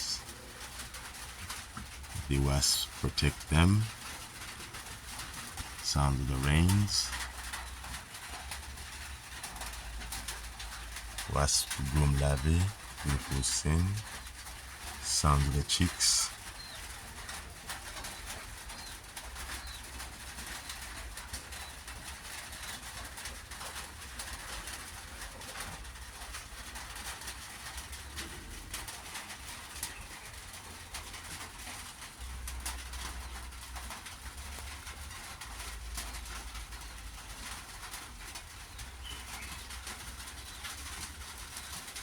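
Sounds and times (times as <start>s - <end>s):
rain pattering: 0.0s - 42.0s
bird calls: 9.0s - 21.9s.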